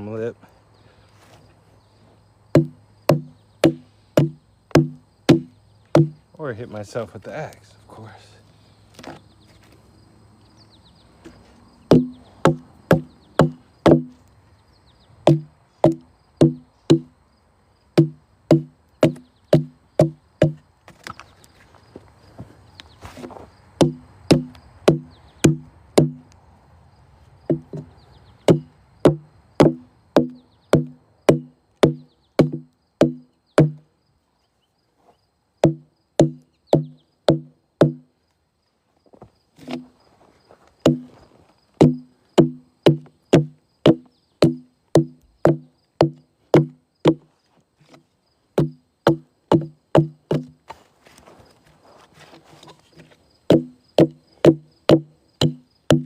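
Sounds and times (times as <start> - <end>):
hatchet chopping into log: 2.6 - 6.2, 11.9 - 14.2, 15.3 - 17.1, 18.0 - 21.0, 23.8 - 26.2, 27.5 - 27.9, 28.5 - 33.8, 35.6 - 38.0, 40.8 - 41.1, 41.8 - 47.2, 48.6 - 50.5, 53.5 - 56.0.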